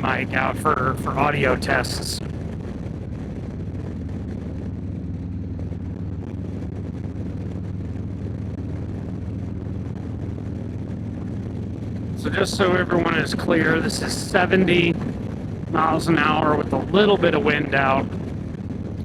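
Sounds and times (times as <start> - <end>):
motorcycle engine droning: 0.0 - 19.0
wind rush on microphone: 0.0 - 19.0.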